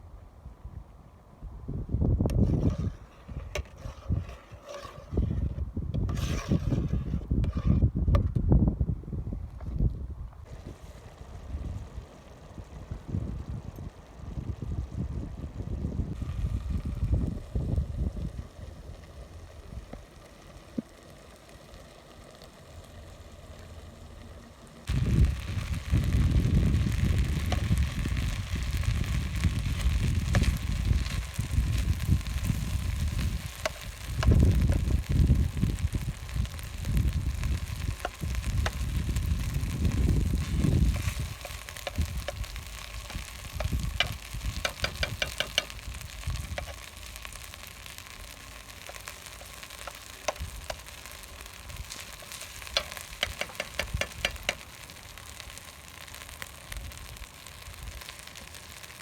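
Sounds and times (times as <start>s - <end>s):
stirring in a pan: 2.3s - 7.9s, 24.8s - 59.0s
food sizzling in a pan: 10.5s - 59.0s
low rumble: 23.8s - 44.6s.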